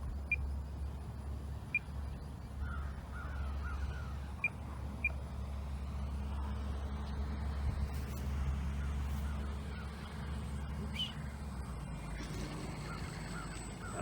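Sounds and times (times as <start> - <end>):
faint wavering bird call: 10.9 - 11.3.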